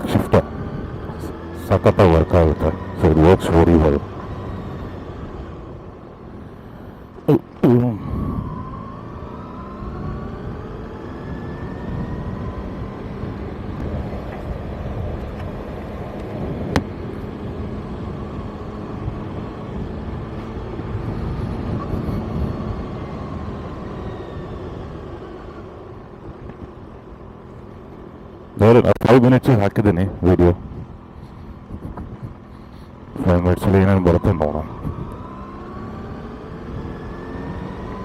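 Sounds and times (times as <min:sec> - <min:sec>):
motorcycle engine revving: 0:30.9 - 0:38.0.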